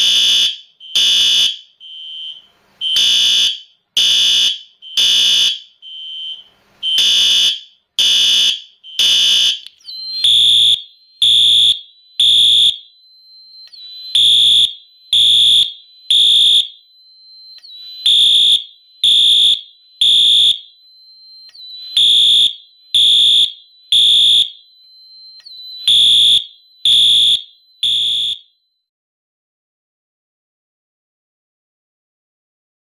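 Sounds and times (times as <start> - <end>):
fire alarm horn blasts: 0.0 - 28.8.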